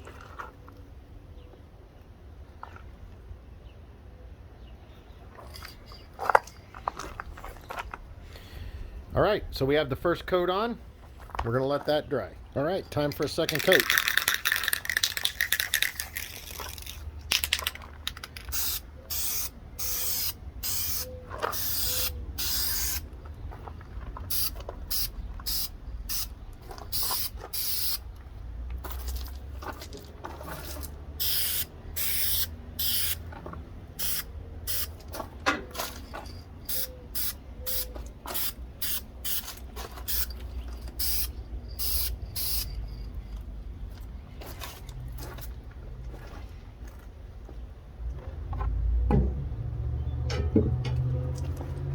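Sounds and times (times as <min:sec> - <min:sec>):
spray paint can hissing: 0:13.4 - 0:23.0, 0:24.3 - 0:28.0, 0:31.2 - 0:33.2, 0:34.0 - 0:35.0, 0:36.6 - 0:42.8.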